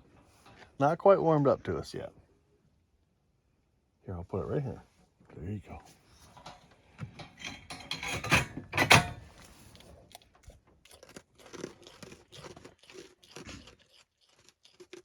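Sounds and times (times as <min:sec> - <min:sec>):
goat crunching a treat: 0:09.2 - 0:15.0.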